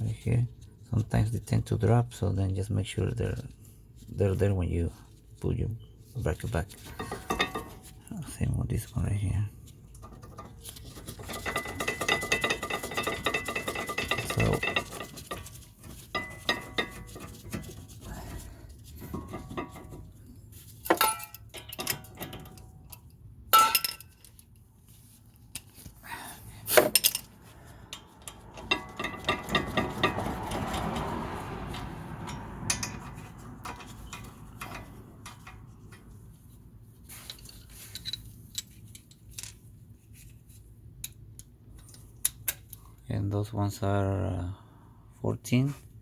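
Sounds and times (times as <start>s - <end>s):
metal tools clinking and knocking: 6.8s - 7.9s, 10.0s - 17.7s, 19.0s - 24.6s, 26.7s - 30.8s, 31.7s - 36.0s, 37.1s - 40.4s
metal scraping: 9.6s - 24.4s, 26.7s - 39.0s.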